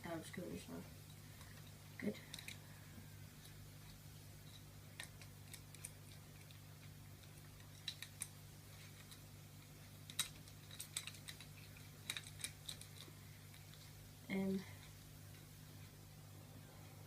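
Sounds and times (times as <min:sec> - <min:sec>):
faint low hum: 0:00.0 - 0:17.0
small parts clicking and tapping: 0:01.1 - 0:02.7, 0:03.4 - 0:13.9.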